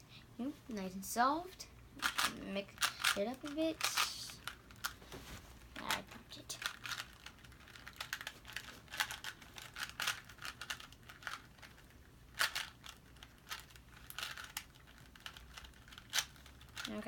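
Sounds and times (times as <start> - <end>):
plastic puzzle cube clicking: 6.6 - 16.9.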